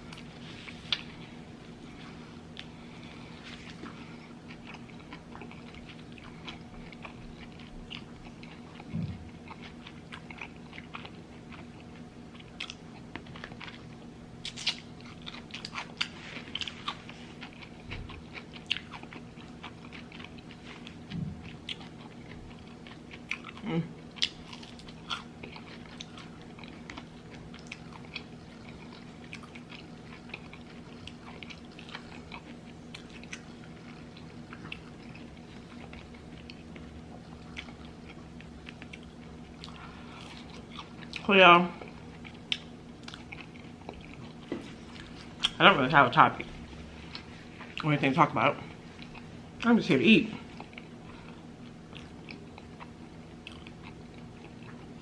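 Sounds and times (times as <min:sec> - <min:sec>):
person chewing food: 0:00.0 - 0:45.6, 0:46.2 - 0:47.9, 0:48.6 - 0:49.7, 0:50.3 - 0:55.0
faint steady hum: 0:00.0 - 0:55.0.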